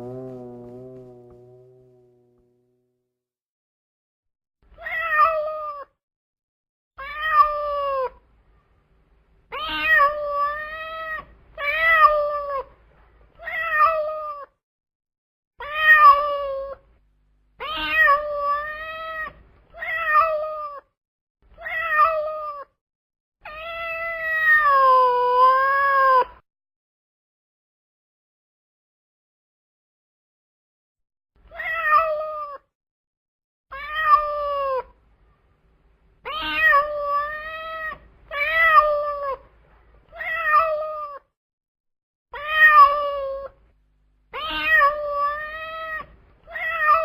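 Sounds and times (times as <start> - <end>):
cat meowing: 31.5 - 32.6, 33.7 - 34.9, 36.3 - 39.4, 40.2 - 41.2, 42.4 - 43.6, 44.4 - 47.0.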